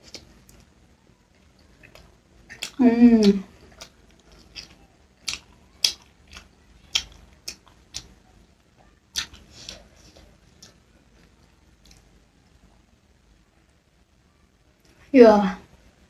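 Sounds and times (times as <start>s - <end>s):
chewing and mouth smacks: 1.5s - 12.1s.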